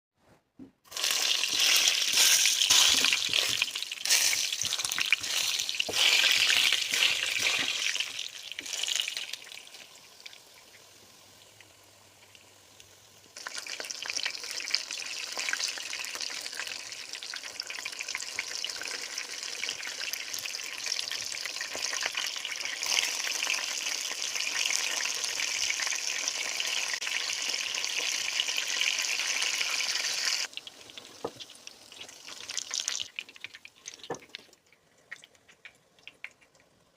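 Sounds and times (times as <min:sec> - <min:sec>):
food frying in hot oil: 0:00.9 - 0:36.4.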